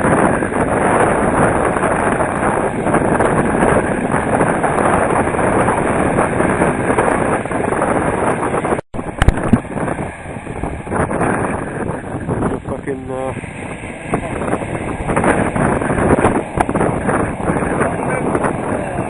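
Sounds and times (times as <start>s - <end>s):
surf rushing: 0.0s - 19.0s
wind buffeting microphone: 0.0s - 19.0s.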